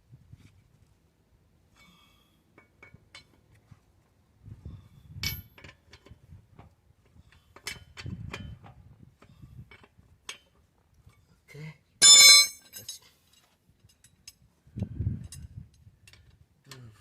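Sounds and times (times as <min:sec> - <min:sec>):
short metallic ring: 0:12.0 - 0:13.0
socket wrench clinking on lug nuts: 0:12.0 - 0:13.0.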